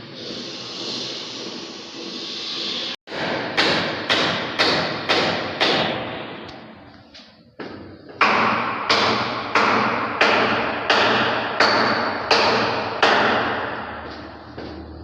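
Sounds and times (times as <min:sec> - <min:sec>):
hammer blows echoing: 0:03.1 - 0:06.9, 0:07.6 - 0:14.1.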